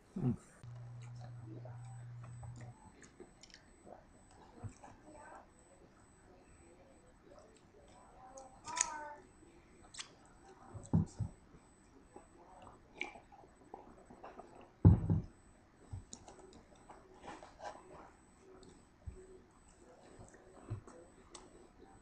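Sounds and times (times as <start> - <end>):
chewing and mouth noises: 12.6 - 14.7.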